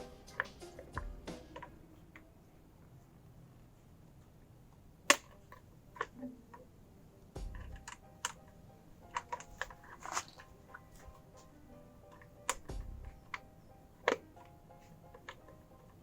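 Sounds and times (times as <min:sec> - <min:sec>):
hand tools clicking and tapping: 0:00.0 - 0:02.3, 0:07.4 - 0:16.0.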